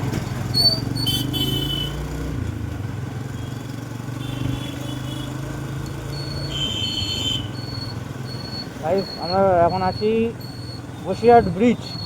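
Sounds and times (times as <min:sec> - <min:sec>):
quick repeating beeps: 0:06.0 - 0:12.0.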